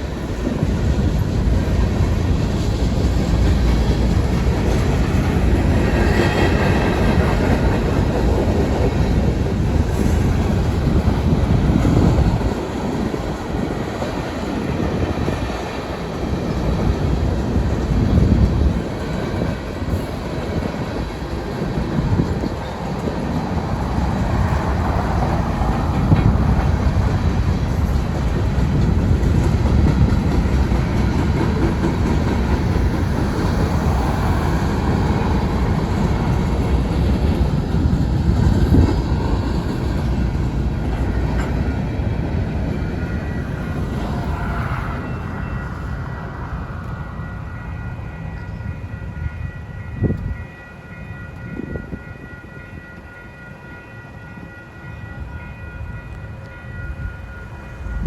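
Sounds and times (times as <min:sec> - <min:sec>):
train wheels rumbling on rail: 0:00.0 - 0:58.0.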